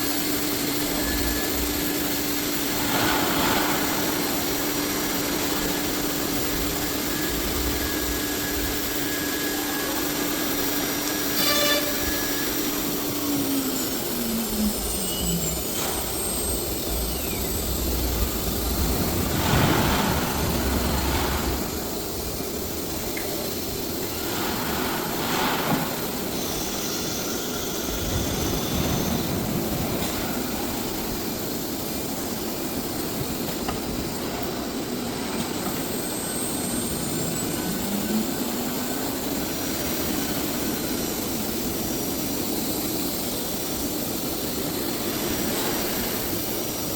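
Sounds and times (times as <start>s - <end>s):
cnc router running: 0.0s - 19.4s, 25.9s - 43.2s.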